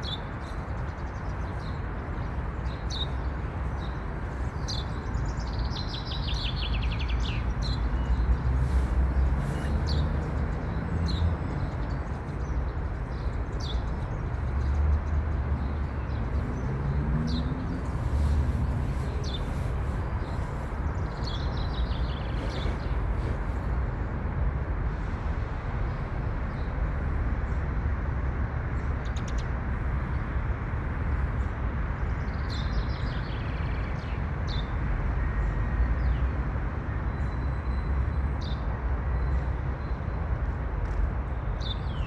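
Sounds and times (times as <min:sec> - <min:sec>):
songbirds singing: 0:00.0 - 0:24.3, 0:28.4 - 0:42.0.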